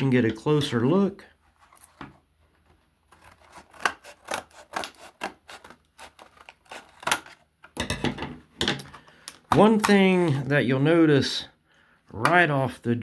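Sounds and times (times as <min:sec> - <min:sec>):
plastic packaging scraping and clicking: 0:01.6 - 0:07.9.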